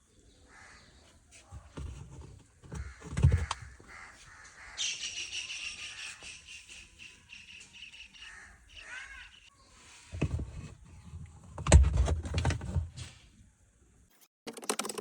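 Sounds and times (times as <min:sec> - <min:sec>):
birds calling: 0:02.6 - 0:09.5.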